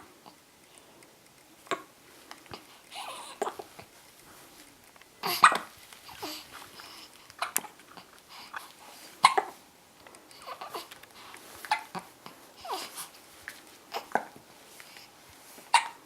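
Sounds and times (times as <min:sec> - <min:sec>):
baby babbling: 0:02.9 - 0:03.7, 0:11.7 - 0:13.0
baby hiccuping: 0:02.9 - 0:03.7, 0:05.2 - 0:05.7, 0:09.2 - 0:09.6, 0:11.7 - 0:12.9, 0:15.7 - 0:16.0.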